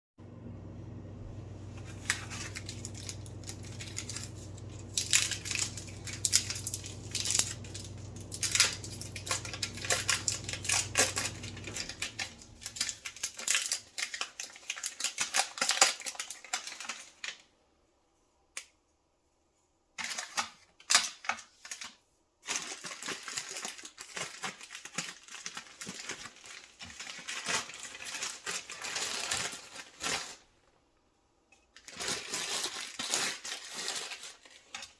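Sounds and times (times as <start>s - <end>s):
microwave oven humming: 0.2s - 13.6s
crackling and crinkling handling: 1.2s - 17.5s, 20.0s - 34.9s.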